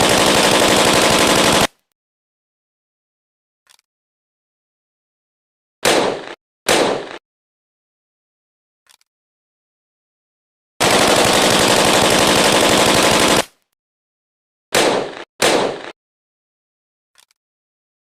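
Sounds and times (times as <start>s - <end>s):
automatic rifle bursts: 0.0s - 1.7s, 10.8s - 13.6s.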